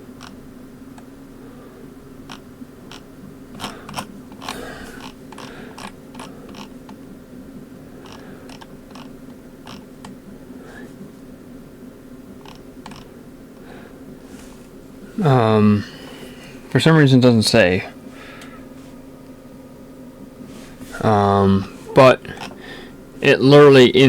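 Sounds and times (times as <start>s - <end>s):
steady low hum: 0.0s - 24.0s
computer mouse clicks: 12.4s - 13.1s.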